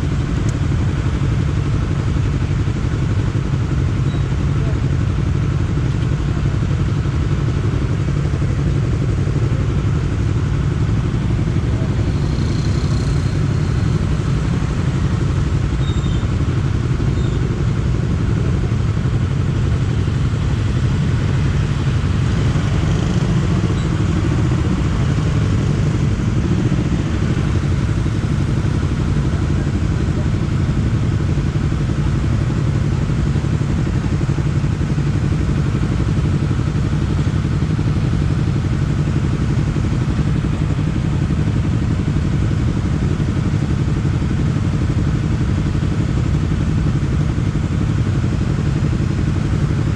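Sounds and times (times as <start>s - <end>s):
motorcycle engine running steadily: 0.0s - 49.9s.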